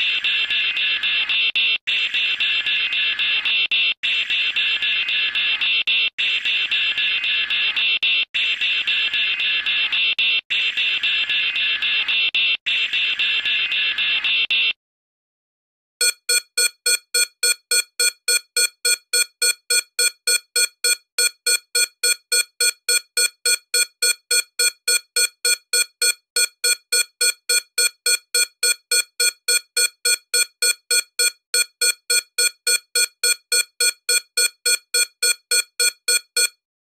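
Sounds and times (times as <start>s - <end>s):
short buzzy electronic beeps: 16.0s - 36.6s.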